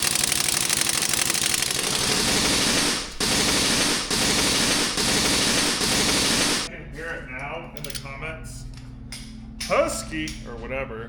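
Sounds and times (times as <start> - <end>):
power tool hammering: 0.0 - 6.7.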